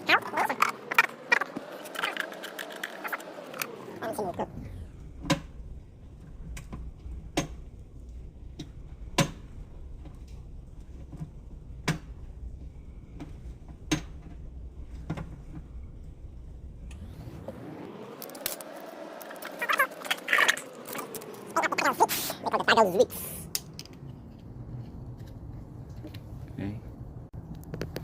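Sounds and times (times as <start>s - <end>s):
rising and falling tone: 0.0s - 5.8s, 16.7s - 25.2s
metal parts clicking and knocking: 0.4s - 3.7s.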